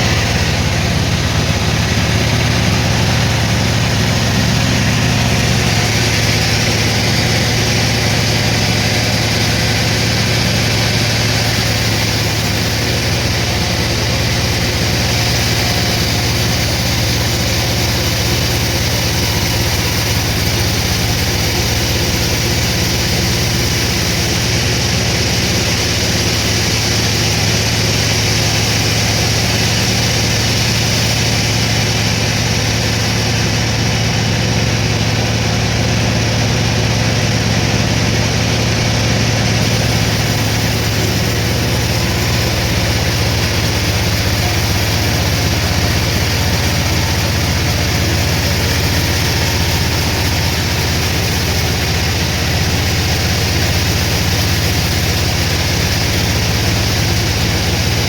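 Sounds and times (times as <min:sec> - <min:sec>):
sawmill machinery hum: 0:00.0 - 0:58.0
steady hiss: 0:39.6 - 0:57.9.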